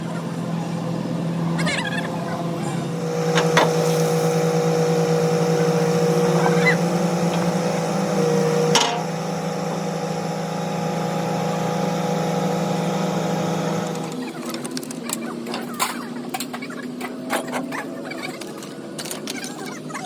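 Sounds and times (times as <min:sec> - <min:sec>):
machine humming with whine: 0:00.0 - 0:14.4.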